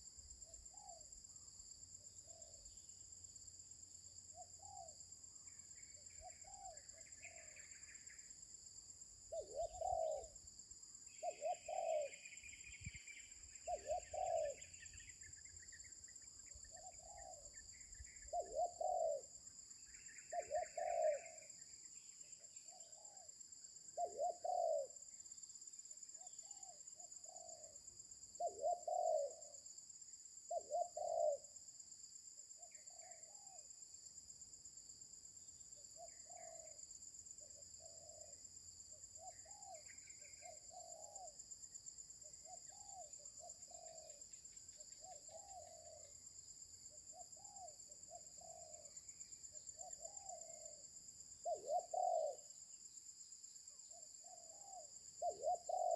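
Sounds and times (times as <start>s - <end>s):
dove cooing: 9.3s - 10.4s, 11.2s - 12.2s, 13.6s - 14.7s, 18.3s - 19.3s, 20.3s - 21.4s, 24.0s - 25.0s, 28.4s - 29.4s, 30.5s - 31.4s, 51.4s - 52.5s, 54.3s - 55.9s.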